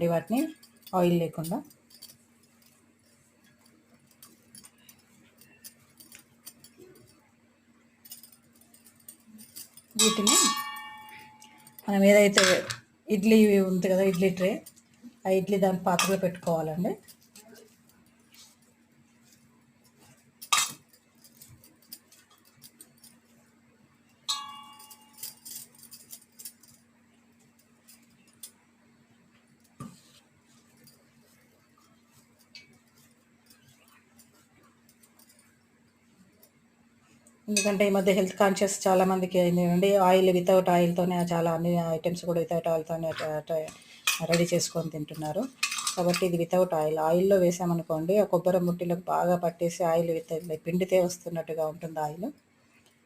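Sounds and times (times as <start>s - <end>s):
steady low hum: 0.0s - 53.0s
metal tray clinking and clattering: 8.1s - 12.8s, 15.8s - 17.5s, 20.4s - 23.1s, 24.3s - 26.8s, 43.0s - 46.5s.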